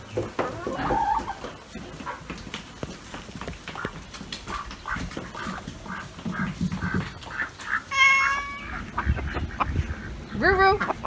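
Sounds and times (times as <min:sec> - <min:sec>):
high steady animal call: 0:07.3 - 0:10.2.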